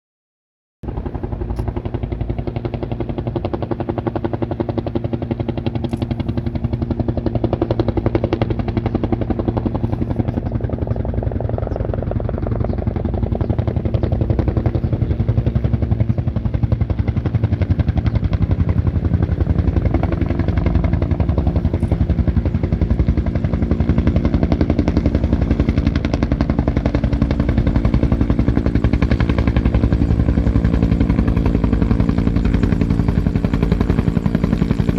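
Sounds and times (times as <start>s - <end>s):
helicopter rotor chopping: 0.8s - 34.9s
turbine hum: 7.4s - 34.9s.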